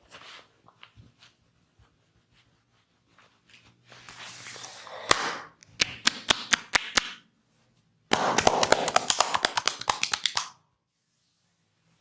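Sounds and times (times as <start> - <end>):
hands slapping on body: 8.1 - 10.6.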